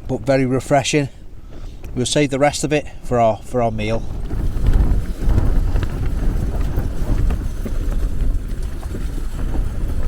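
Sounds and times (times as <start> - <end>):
gusty wind buffeting microphone: 0.0 - 10.0.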